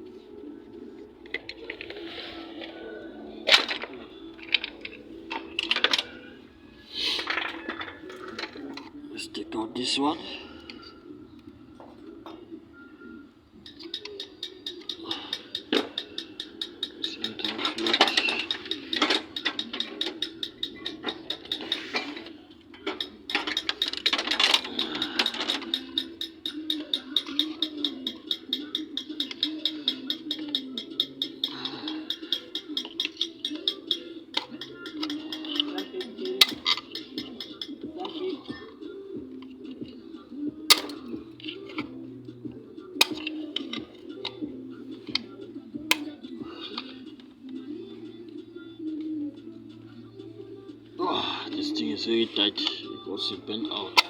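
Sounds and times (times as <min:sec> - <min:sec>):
hand tools clicking on metal: 0:13.6 - 0:38.8, 0:40.7 - 0:42.4, 0:43.0 - 0:47.6, 0:51.5 - 0:54.0.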